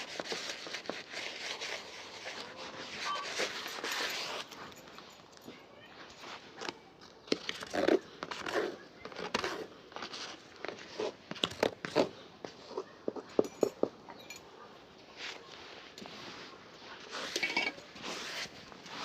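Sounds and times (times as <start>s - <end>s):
rubbing strokes: 0.0s - 4.6s, 16.1s - 19.0s.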